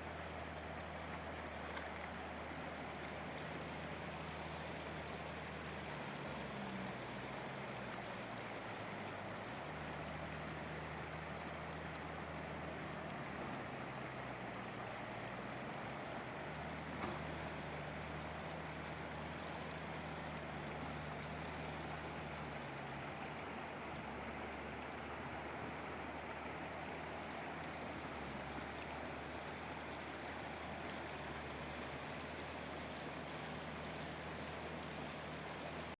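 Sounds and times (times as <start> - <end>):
flowing water rushing: 0.0 - 36.0.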